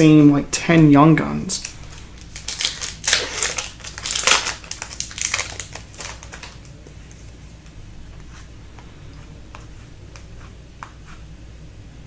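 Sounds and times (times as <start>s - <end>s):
cards rustling: 0.7s - 7.4s
wrappers crinkling: 1.6s - 6.8s.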